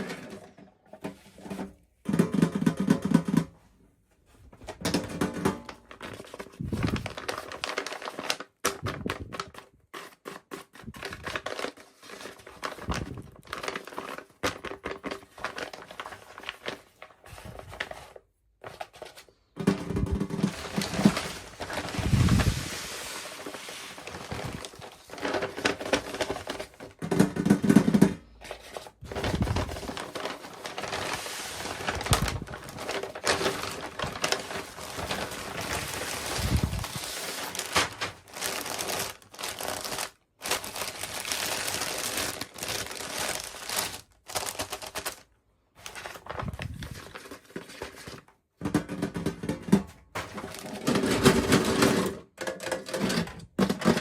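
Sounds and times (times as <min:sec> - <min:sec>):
plastic packaging crinkling: 0:05.7 - 0:10.2, 0:10.9 - 0:27.0, 0:28.5 - 0:48.3, 0:50.2 - 0:51.9.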